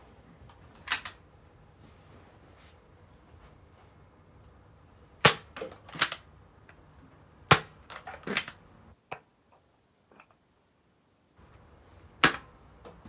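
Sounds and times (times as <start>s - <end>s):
foam dart blaster snaps: 7.5s - 8.6s, 12.2s - 12.5s.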